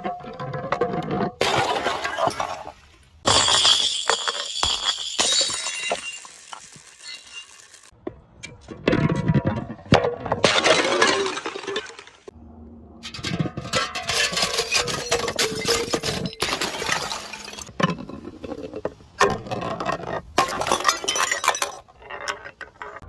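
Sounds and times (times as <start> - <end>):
glass breaking and crunching: 3.2 - 7.9, 10.4 - 12.2, 13.2 - 17.7
sharp glass cracks: 3.3 - 7.9.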